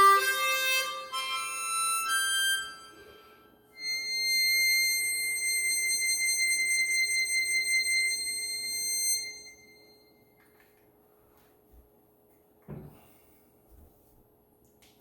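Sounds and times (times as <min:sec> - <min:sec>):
harmonica long high note: 0:00.0 - 0:10.1.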